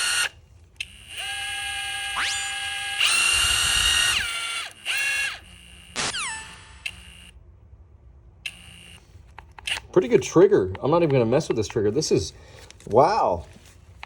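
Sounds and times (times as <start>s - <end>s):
impact wrench motor whine: 0.0s - 7.4s, 8.5s - 9.1s.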